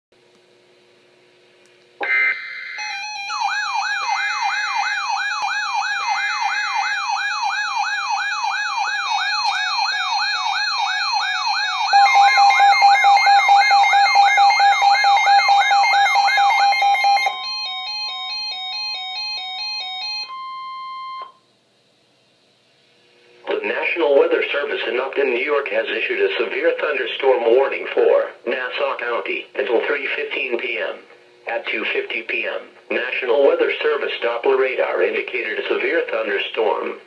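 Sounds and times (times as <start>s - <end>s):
siren-like sweeping tone: 2.0s - 17.5s.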